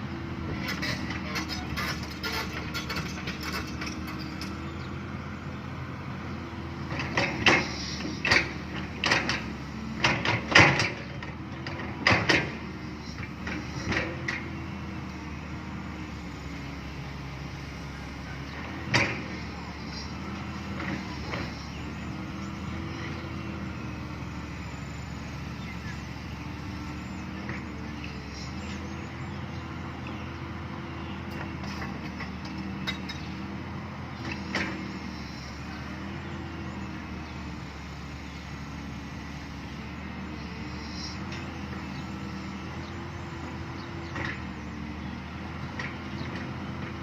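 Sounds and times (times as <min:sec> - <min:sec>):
excavator diesel engine running: 0:00.0 - 0:47.0.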